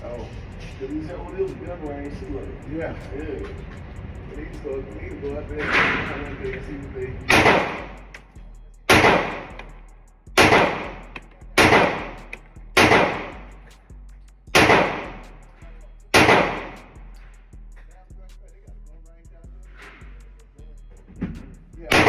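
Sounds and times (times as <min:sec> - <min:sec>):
echoing gunshots: 0:07.3 - 0:07.9, 0:08.9 - 0:09.5, 0:10.4 - 0:11.0, 0:11.6 - 0:12.1, 0:12.8 - 0:13.4, 0:14.6 - 0:15.2, 0:16.2 - 0:16.8.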